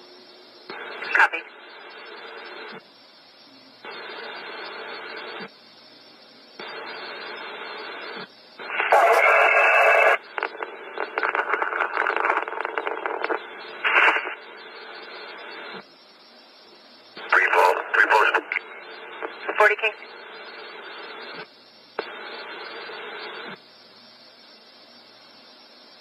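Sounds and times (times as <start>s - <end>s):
crackling radio transmission: 0.0s - 25.3s
radio carrier hiss: 0.0s - 26.0s
static burst: 0.7s - 2.8s, 3.8s - 5.6s, 6.6s - 16.1s, 17.0s - 23.7s.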